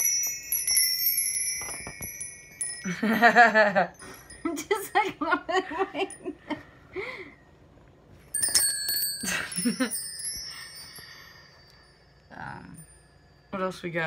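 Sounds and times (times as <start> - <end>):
metal chime ringing: 0.0 - 5.0, 8.3 - 14.0.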